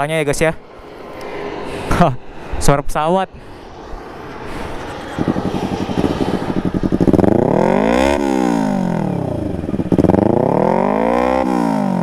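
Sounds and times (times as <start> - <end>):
motorcycle engine revving: 3.6 - 12.0.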